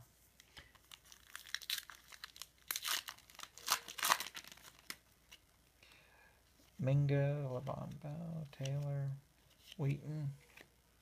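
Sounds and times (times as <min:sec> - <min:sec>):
foil wrapper tearing and crinkling: 0:00.8 - 0:05.0.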